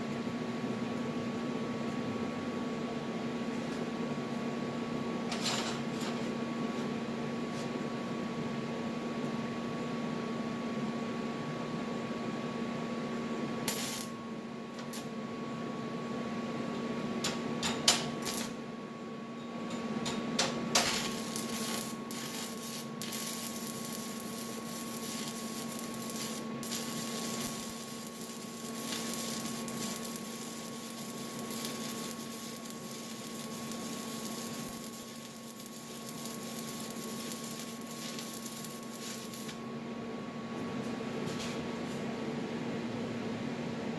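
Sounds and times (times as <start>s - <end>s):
welder hum: 13.6s - 14.2s, 18.2s - 18.7s, 20.7s - 39.7s
welding arc crackling and hissing: 13.7s - 14.2s, 18.2s - 18.6s, 20.7s - 39.6s.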